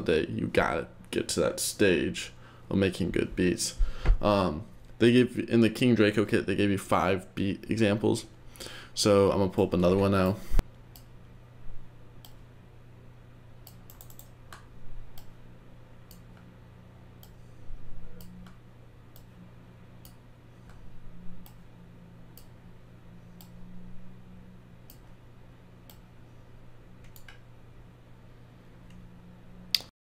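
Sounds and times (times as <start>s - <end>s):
low electrical hum: 0.0s - 29.9s
computer mouse clicks: 13.6s - 15.3s, 17.2s - 17.4s, 18.2s - 19.3s, 27.0s - 27.4s.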